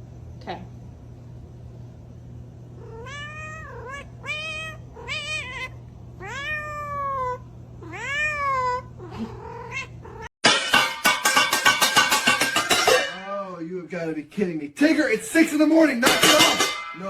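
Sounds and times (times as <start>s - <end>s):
cat meowing: 2.8s - 10.3s.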